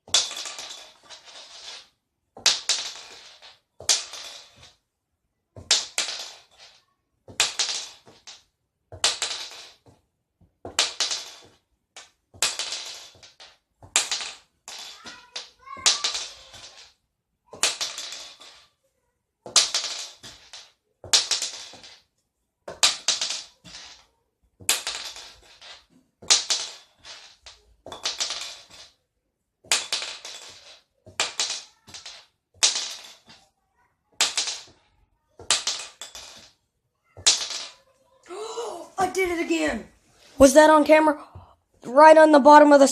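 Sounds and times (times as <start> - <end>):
shotgun shell landing and clattering: 29.6 - 33.4, 35.4 - 36.5.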